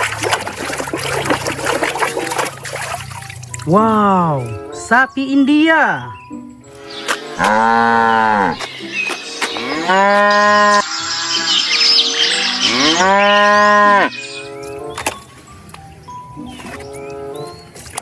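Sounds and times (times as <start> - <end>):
cow mooing: 7.4 - 8.7, 9.5 - 10.9, 12.6 - 14.3.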